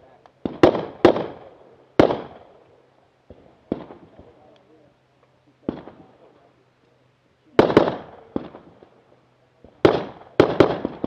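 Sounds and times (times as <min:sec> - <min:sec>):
rifle shots echoing: 0:00.4 - 0:02.6, 0:03.3 - 0:04.3, 0:05.6 - 0:06.1, 0:07.6 - 0:08.9, 0:09.7 - 0:11.0.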